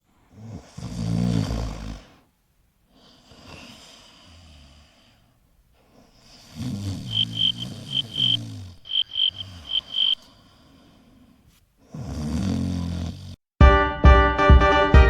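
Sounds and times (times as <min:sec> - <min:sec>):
dog snoring: 0:00.3 - 0:02.3, 0:06.0 - 0:08.8, 0:11.8 - 0:13.4.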